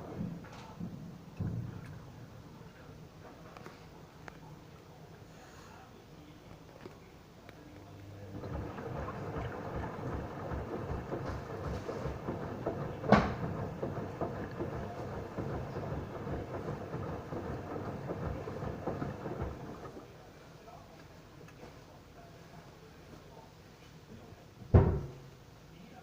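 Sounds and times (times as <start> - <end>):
washing machine churning water: 8.0 - 20.2
loud clunk: 8.4 - 20.0
low knocks: 8.4 - 20.0.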